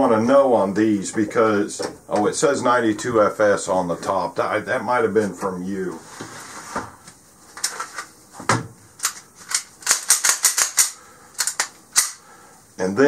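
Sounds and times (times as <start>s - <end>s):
plastic and metal clicks and rattles: 9.0s - 12.2s.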